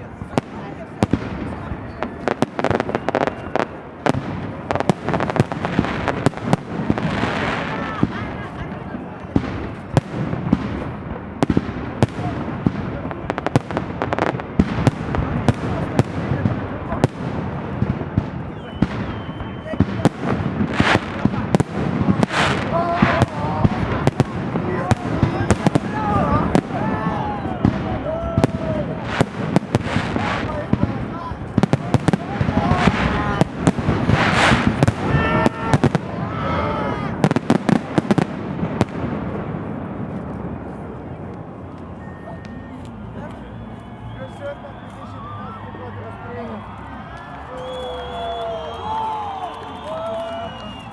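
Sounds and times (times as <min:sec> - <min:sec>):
fireworks bangs and cracks: 0:00.0 - 0:43.7.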